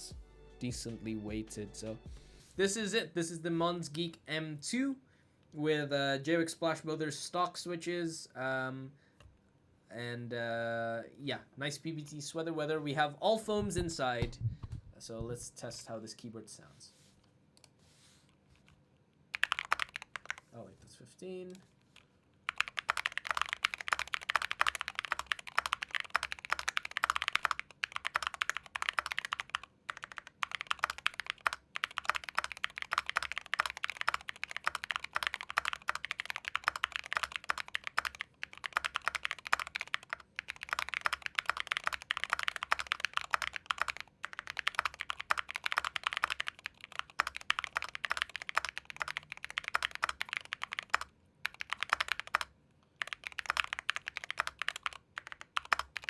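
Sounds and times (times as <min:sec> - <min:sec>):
mechanical keyboard typing: 0:19.3 - 0:20.4, 0:22.5 - 0:56.0.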